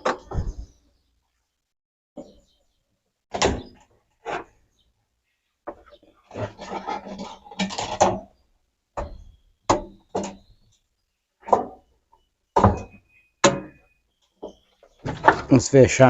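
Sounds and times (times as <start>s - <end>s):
hard plastic knocks and clunks: 12.6s - 13.8s, 14.4s - 15.5s.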